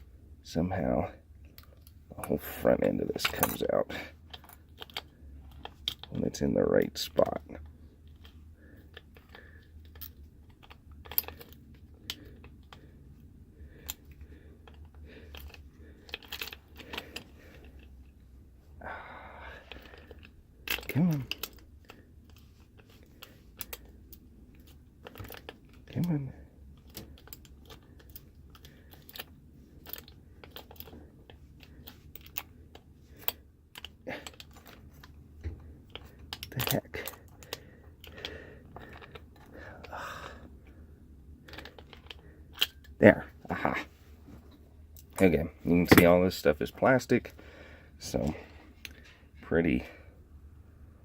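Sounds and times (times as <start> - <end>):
lock parts clicking and tapping: 13.8 - 17.6, 19.7 - 26.0, 26.7 - 39.9.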